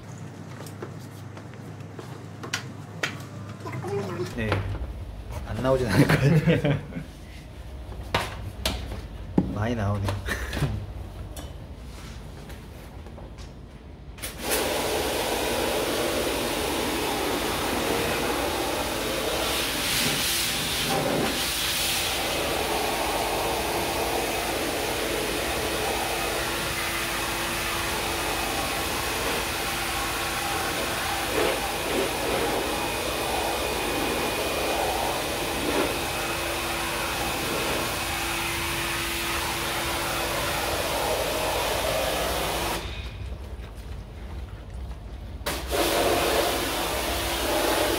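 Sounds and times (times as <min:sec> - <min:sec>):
pressure washer water jet hissing: 0:14.2 - 0:43.0, 0:45.5 - 0:47.9.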